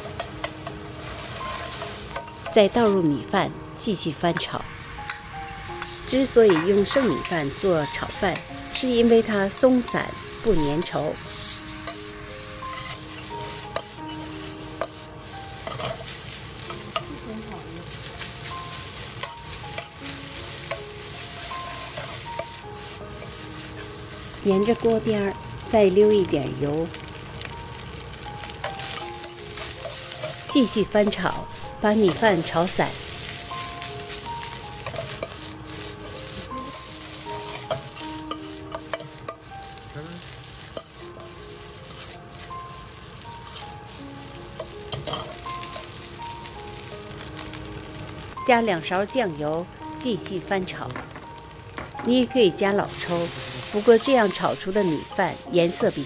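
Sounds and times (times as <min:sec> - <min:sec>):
spatula scraping and clacking pan: 0:00.0 - 0:03.0, 0:08.3 - 0:17.2, 0:17.9 - 0:24.8, 0:28.4 - 0:39.5, 0:40.2 - 0:46.0, 0:53.0 - 0:56.0
rice sizzling in a pan: 0:00.0 - 0:56.0.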